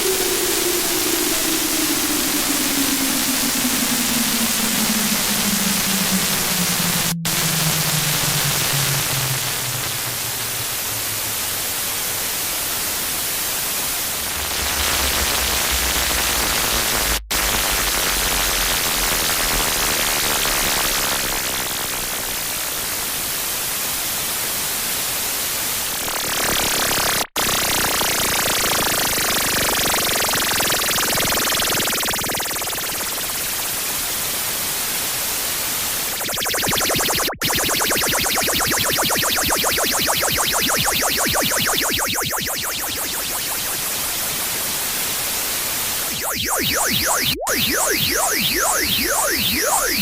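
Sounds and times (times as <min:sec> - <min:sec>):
low tone sliding downward: 0:00.0 - 0:12.2, 0:14.1 - 0:19.8, 0:36.0 - 0:44.2, 0:46.1 - 0:50.0
harsh static noise: 0:00.0 - 0:23.2, 0:26.0 - 0:50.0.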